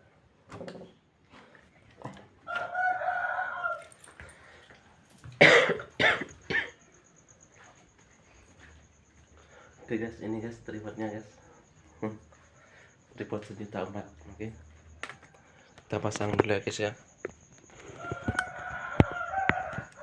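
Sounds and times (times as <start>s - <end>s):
rooster crowing: 2.4s - 4.1s, 17.7s - 20.0s
person coughing: 5.4s - 6.8s.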